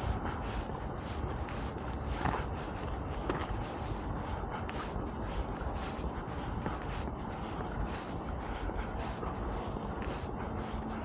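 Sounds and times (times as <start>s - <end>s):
steady low rumble: 0.0s - 11.0s
shoes scuffing on a path: 1.4s - 5.0s.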